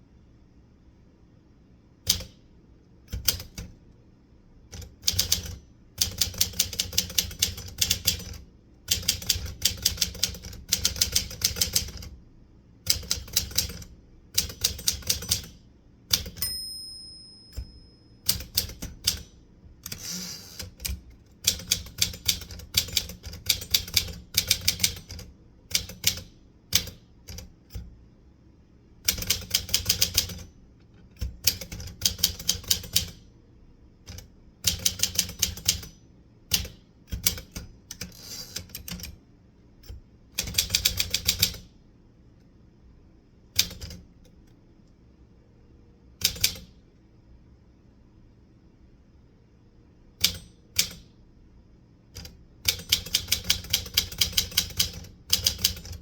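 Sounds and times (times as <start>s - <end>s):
typewriter keystrokes: 2.1s - 2.4s, 3.1s - 3.7s, 4.7s - 12.1s, 12.9s - 16.5s, 17.6s - 27.9s, 29.0s - 30.5s, 31.2s - 33.2s, 34.1s - 35.9s, 36.5s - 39.2s, 39.8s - 41.7s, 43.6s - 44.0s, 46.2s - 46.8s, 50.2s - 51.1s, 52.1s - 56.0s
typewriter carriage return rasp: 4.8s - 12.1s, 18.3s - 26.2s, 36.6s - 39.1s
typewriter margin bell ding: 16.2s - 18.8s.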